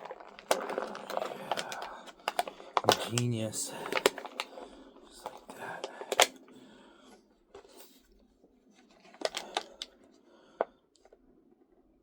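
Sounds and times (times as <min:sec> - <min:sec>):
plastic packaging clicks and taps: 0:00.0 - 0:06.4, 0:09.1 - 0:09.9
plastic rustling: 0:00.0 - 0:06.5, 0:08.7 - 0:10.0.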